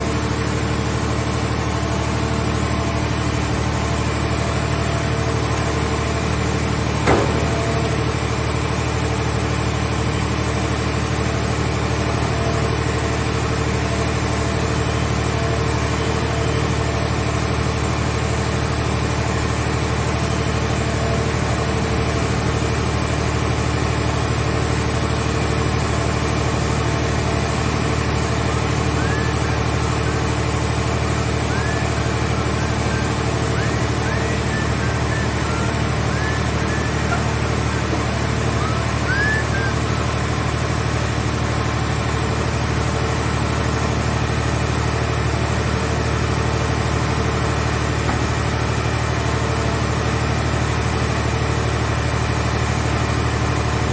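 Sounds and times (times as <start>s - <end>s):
baler engine running: 0.0s - 53.9s
sharp knock: 7.1s - 7.9s.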